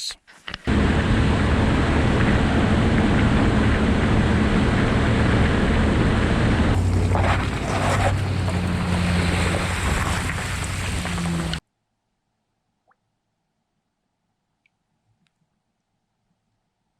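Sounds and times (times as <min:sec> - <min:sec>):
motorboat engine hum: 0:00.7 - 0:11.6
water rushing past hull: 0:00.7 - 0:11.6
wind buffeting microphone: 0:00.7 - 0:11.6.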